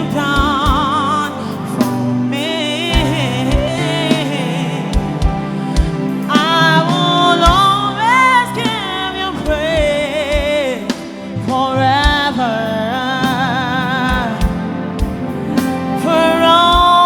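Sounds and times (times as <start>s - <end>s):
band accompaniment: 0.0s - 17.0s
woman singing gospel: 0.0s - 17.0s
kick drum beat: 3.0s - 3.8s, 5.0s - 6.2s, 9.4s - 10.8s.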